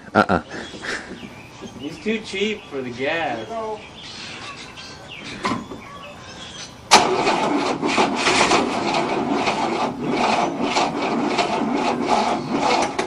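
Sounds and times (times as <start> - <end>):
starter motor cranking engine: 6.9 - 13.0.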